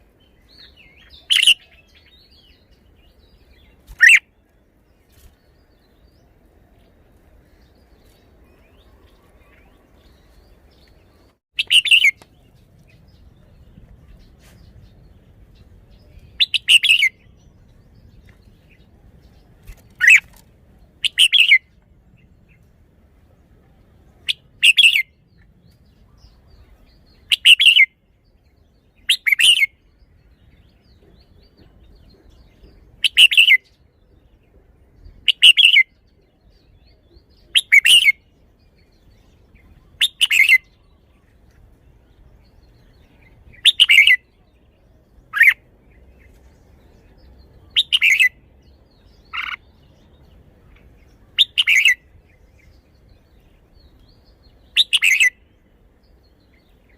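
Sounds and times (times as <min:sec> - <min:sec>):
bird singing bubbly phrases: 0:51.2 - 0:52.1.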